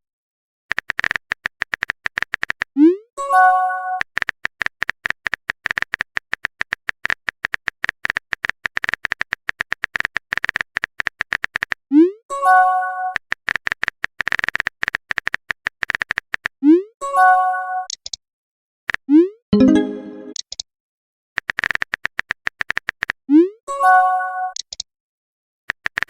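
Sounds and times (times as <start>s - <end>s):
message notification chime: 19.6s - 20.4s
keyboard typing clicks: 24.5s - 24.9s.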